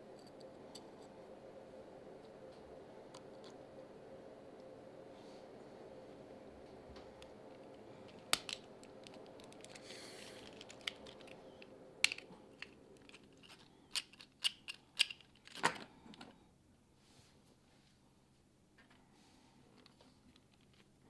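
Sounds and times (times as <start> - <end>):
faint steady hum: 0.0 - 21.0
plastic parts clicking together: 7.2 - 16.3.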